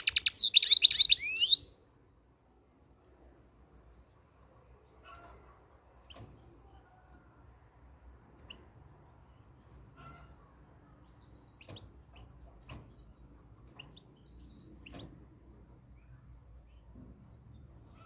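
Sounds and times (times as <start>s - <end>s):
goldfinch chirps and call notes: 0.0s - 1.8s, 9.6s - 12.3s.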